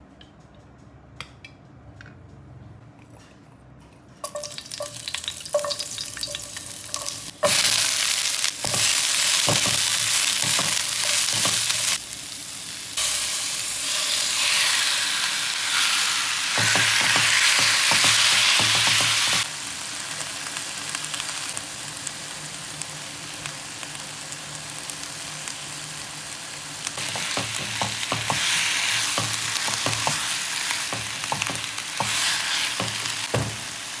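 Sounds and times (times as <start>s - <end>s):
food sizzling in a pan: 4.2s - 34.0s
stirring and scraping in a pan: 28.0s - 33.3s.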